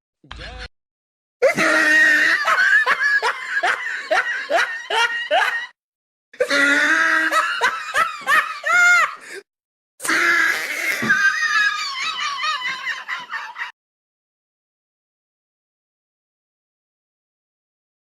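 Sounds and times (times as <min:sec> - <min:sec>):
high-pitched cackling laughter: 0:01.4 - 0:05.8, 0:06.4 - 0:09.2, 0:10.0 - 0:13.8.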